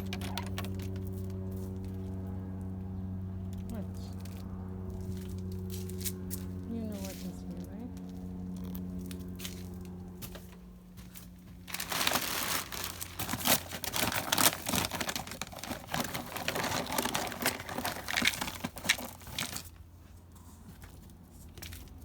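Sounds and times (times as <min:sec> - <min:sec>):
plastic packaging crinkling: 0:11.6 - 0:19.7.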